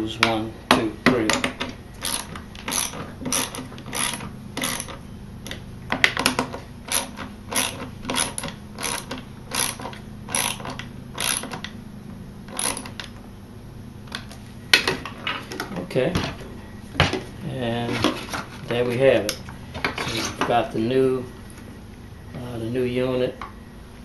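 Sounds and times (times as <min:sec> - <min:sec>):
ratchet wrench clicking: 0:01.4 - 0:05.0, 0:06.0 - 0:11.8, 0:12.5 - 0:13.2.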